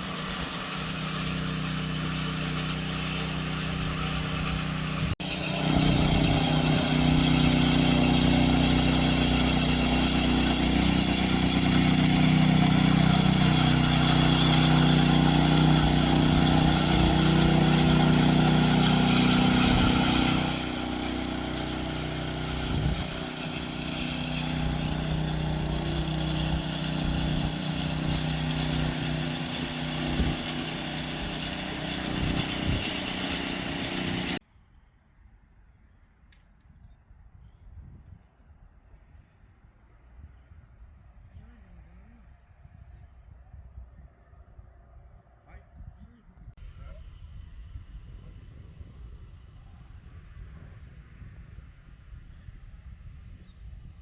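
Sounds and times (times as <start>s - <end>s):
engine running: 0.0s - 34.4s.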